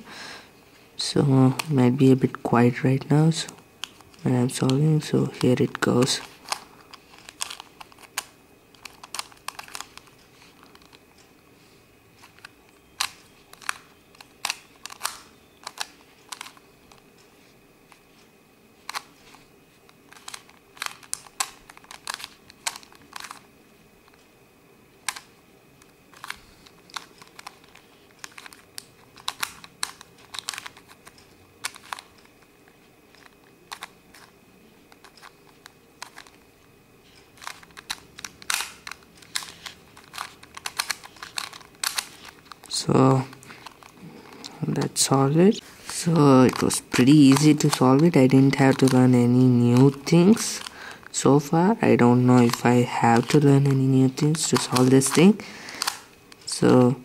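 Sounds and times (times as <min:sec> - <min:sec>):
plastic puzzle clicking: 0:05.3 - 0:11.0, 0:12.2 - 0:17.0, 0:20.1 - 0:23.4, 0:25.0 - 0:32.4, 0:33.1 - 0:34.3, 0:34.9 - 0:36.4, 0:37.1 - 0:43.9, 0:45.8 - 0:51.5, 0:52.1 - 0:56.8.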